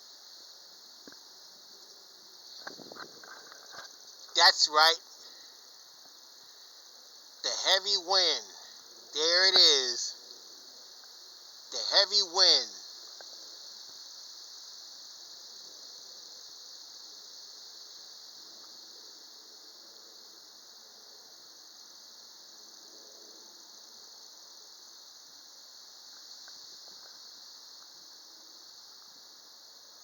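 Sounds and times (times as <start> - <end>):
faint rustle of air: 0.0 - 4.4
high-pitched insect chorus: 0.0 - 30.0.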